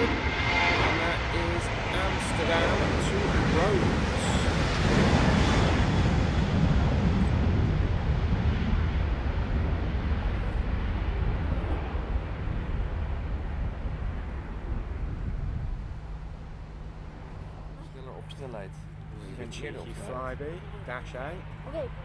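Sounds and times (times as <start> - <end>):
jet engines rushing rumble: 0.0 - 22.0.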